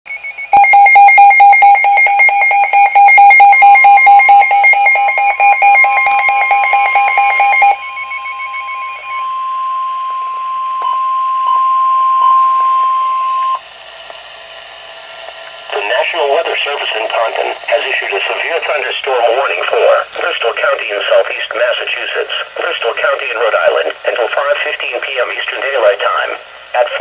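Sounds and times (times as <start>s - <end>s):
rapid electronic alarm beeping: 0.1s - 13.7s
steady single-pitch alarm tone: 0.1s - 16.0s.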